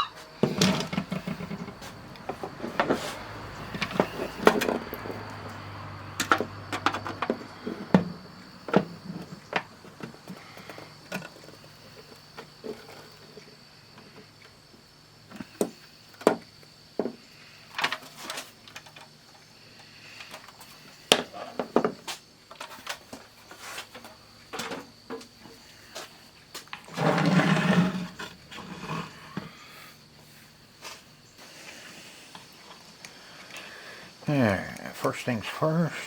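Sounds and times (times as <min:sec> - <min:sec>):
scraping rustle: 0:00.1 - 0:04.8, 0:21.4 - 0:32.9.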